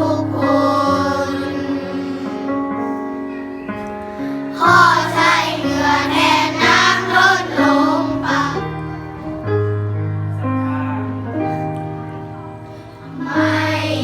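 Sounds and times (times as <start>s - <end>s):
singers vocal warm-up: 0.0s - 3.5s, 4.1s - 9.2s, 13.0s - 14.0s.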